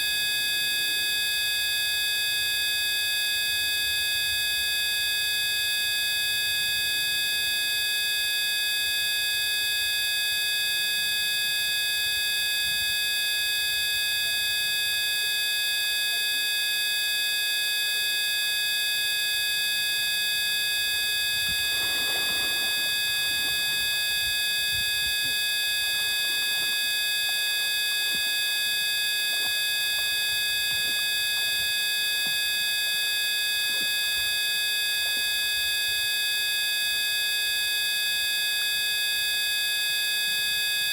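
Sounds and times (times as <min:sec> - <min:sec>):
high electronic buzzing whine: 0:17.0 - 0:38.8
faint rustle: 0:21.2 - 0:28.4.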